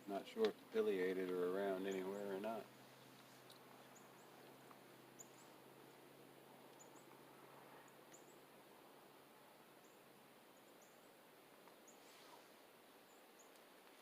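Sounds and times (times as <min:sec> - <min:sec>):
faint high-pitched bird chirps: 0:07.8 - 0:08.4.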